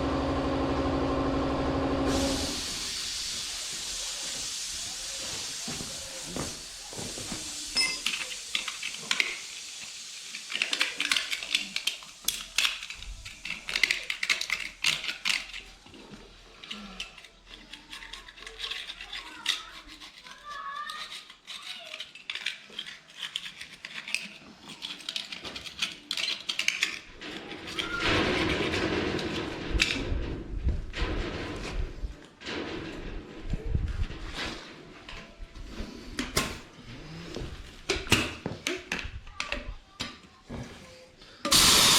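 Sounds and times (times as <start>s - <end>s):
metal tools clinking on metal parts: 7.7s - 9.2s.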